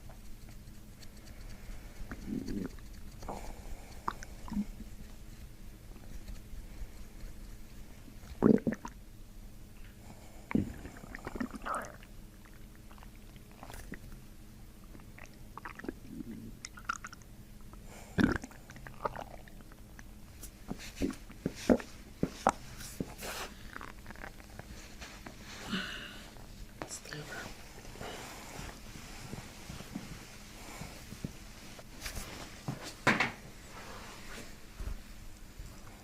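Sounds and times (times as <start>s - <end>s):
stomach gurgling: 2.1s - 4.9s, 8.2s - 9.0s, 10.5s - 14.2s, 14.8s - 17.3s, 18.2s - 19.9s, 23.6s - 24.7s.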